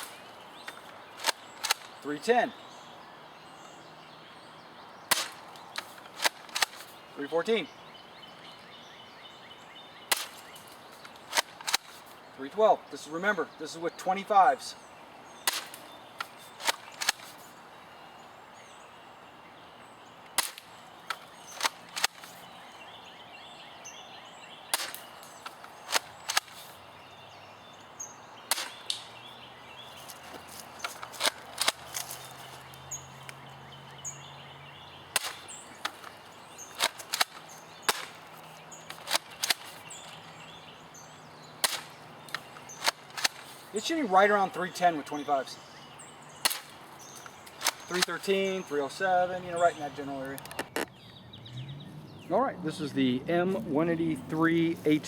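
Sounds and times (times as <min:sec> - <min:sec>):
airsoft shotgun racked and fired: 0:00.0 - 0:01.9, 0:05.1 - 0:06.9, 0:10.1 - 0:12.0, 0:15.5 - 0:17.4, 0:20.4 - 0:22.4, 0:24.8 - 0:26.8, 0:28.5 - 0:29.1, 0:30.2 - 0:32.4, 0:35.2 - 0:36.2, 0:36.8 - 0:38.3, 0:38.9 - 0:40.1, 0:41.6 - 0:43.5, 0:46.5 - 0:48.4.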